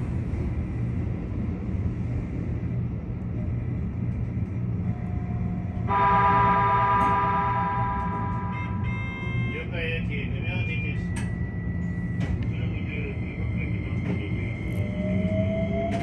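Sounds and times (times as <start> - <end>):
electric train rumbling: 0.0 - 16.0
train horn blast: 5.9 - 9.7.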